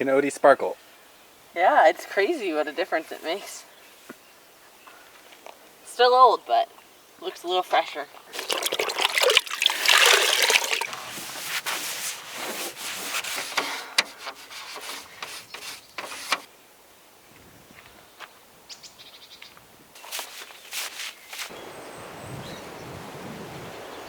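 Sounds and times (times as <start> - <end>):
water rushing: 8.3 - 11.3
scrubbing on van body: 8.4 - 16.5, 20.0 - 21.5.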